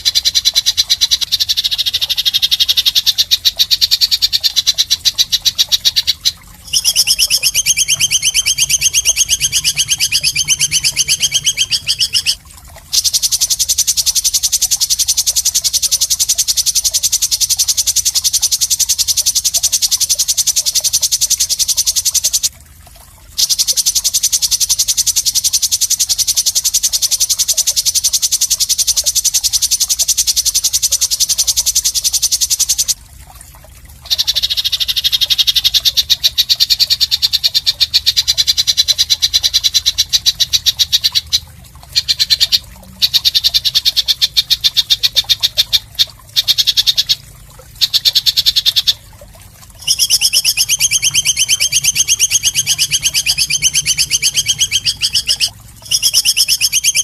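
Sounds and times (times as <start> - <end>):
songbird rattling trill: 0.0 - 22.5, 34.0 - 47.2, 47.8 - 49.0, 49.8 - 57.0.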